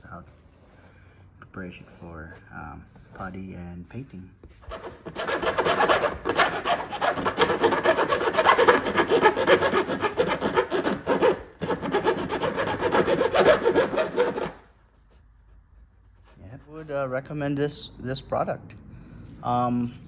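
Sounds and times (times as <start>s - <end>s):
sandpaper rubbing on plastic: 4.6s - 17.0s.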